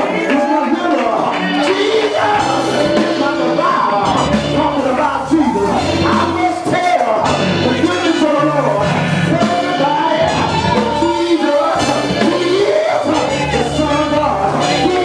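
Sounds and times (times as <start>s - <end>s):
band playing: 0.0s - 15.0s
gospel voices singing: 0.0s - 15.0s
long held bass notes: 1.7s - 15.0s.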